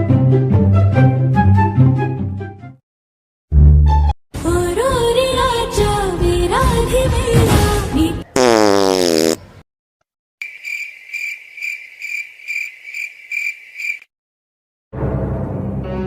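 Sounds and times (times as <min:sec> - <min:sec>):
crickets chirping: 0:10.4 - 0:14.1.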